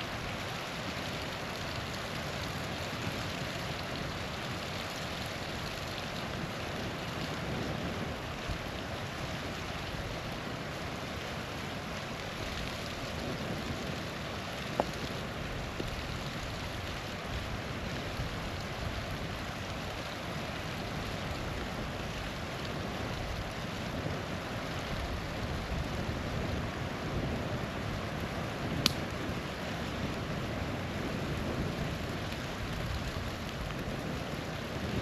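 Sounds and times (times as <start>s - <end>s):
small waterfall rushing: 0.0s - 35.0s
campfire pop: 14.6s - 15.1s, 28.7s - 29.3s.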